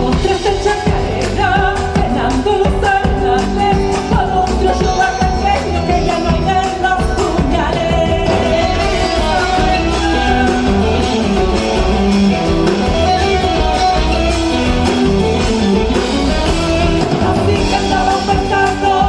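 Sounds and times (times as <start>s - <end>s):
guitar: 0.0s - 19.0s
person singing: 0.0s - 19.0s.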